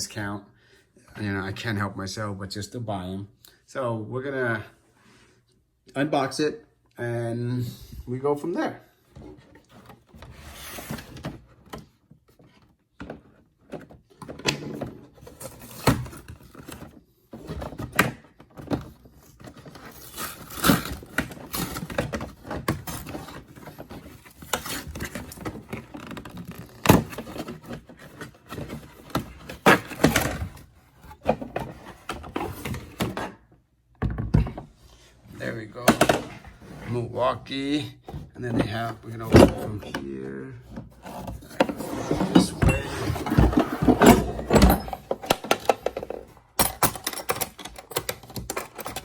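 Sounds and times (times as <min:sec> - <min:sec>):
packaging scraping and rustling: 0:15.1 - 0:18.0, 0:18.6 - 0:33.4, 0:40.6 - 0:46.4.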